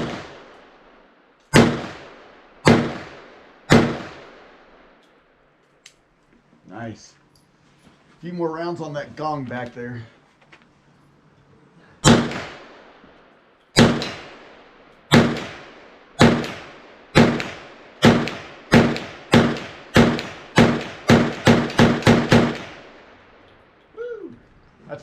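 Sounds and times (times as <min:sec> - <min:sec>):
pistol shots with echo: 0:00.0 - 0:00.8, 0:01.5 - 0:05.0, 0:12.0 - 0:13.0, 0:13.7 - 0:23.5.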